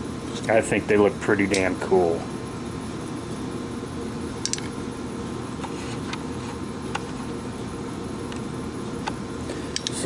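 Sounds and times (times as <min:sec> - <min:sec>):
ventilation hum: 0:00.0 - 0:10.0
light clicks: 0:09.0 - 0:10.0.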